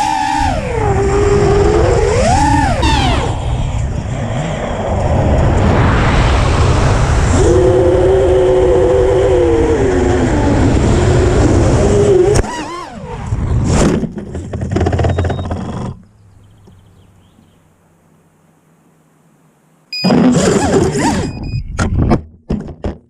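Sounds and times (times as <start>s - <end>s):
drone motors whining: 0.0s - 5.9s, 7.0s - 16.0s
wind noise: 0.0s - 15.9s, 20.0s - 22.7s.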